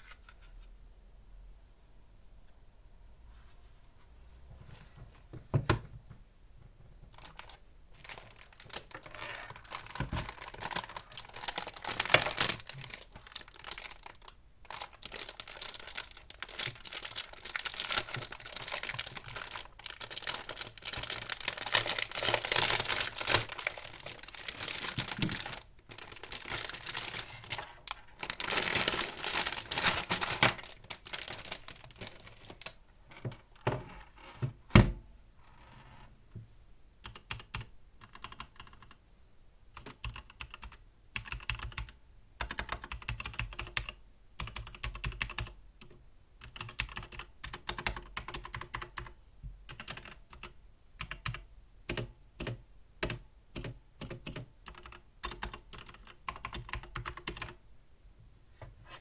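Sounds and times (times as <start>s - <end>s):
plastic packaging crinkling: 7.1s - 32.8s.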